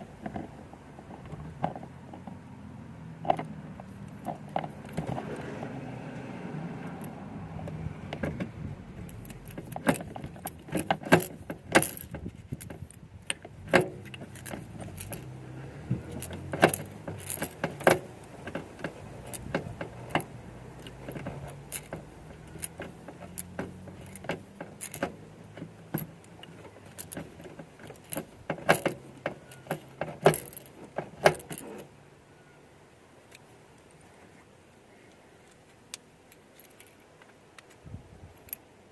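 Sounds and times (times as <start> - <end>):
metal tools clicking and clinking: 9.1 - 15.4, 16.0 - 31.8.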